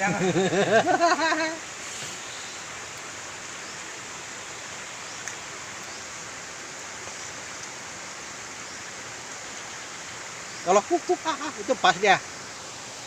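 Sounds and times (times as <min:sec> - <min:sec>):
faint click: 0:05.2 - 0:05.9.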